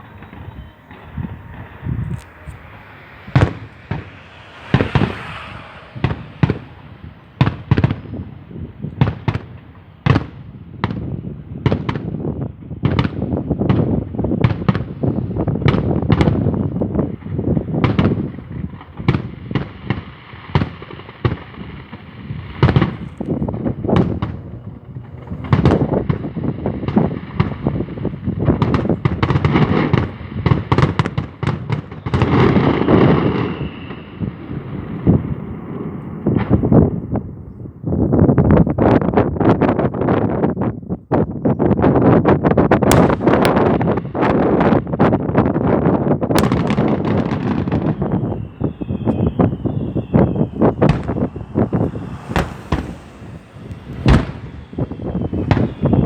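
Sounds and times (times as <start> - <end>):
low rumble: 0.0 - 9.1, 46.4 - 56.0
fireworks bangs and cracks: 0.0 - 41.3, 41.9 - 56.0.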